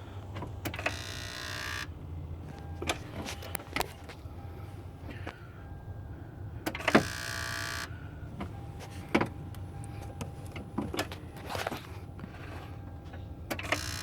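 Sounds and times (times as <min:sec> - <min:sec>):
car electrics buzzing whine: 0:00.0 - 0:14.0
ignition clicks: 0:00.2 - 0:01.9, 0:02.5 - 0:04.2, 0:06.6 - 0:11.8, 0:12.9 - 0:14.0.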